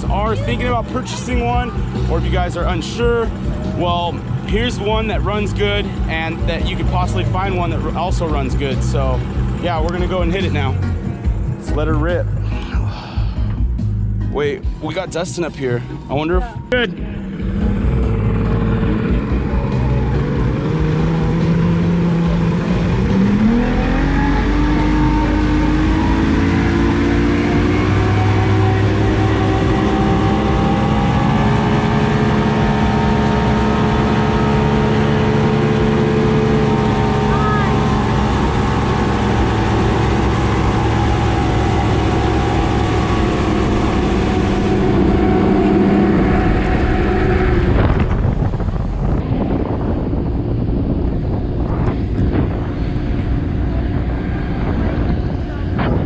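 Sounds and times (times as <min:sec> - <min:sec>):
outboard motor running: 0:00.0 - 0:14.1, 0:14.9 - 0:56.0
water noise: 0:16.5 - 0:56.0
wind noise: 0:24.4 - 0:56.0.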